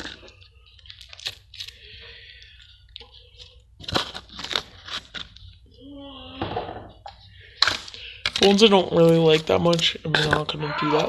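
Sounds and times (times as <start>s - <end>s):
slime squishing with clicks and pops: 0.0s - 5.8s, 7.0s - 10.5s.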